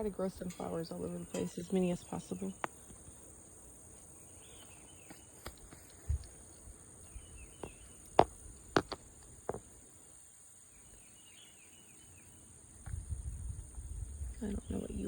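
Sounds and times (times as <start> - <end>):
high-pitched insect chorus: 0.0 - 15.0
faint bird chirps: 4.1 - 8.2, 10.6 - 15.0.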